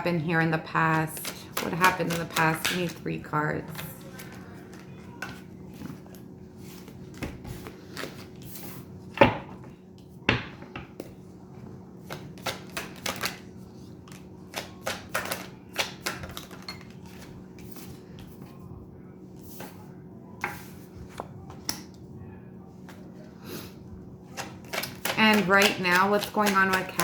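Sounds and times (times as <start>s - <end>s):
cards being shuffled: 3.7s - 8.9s.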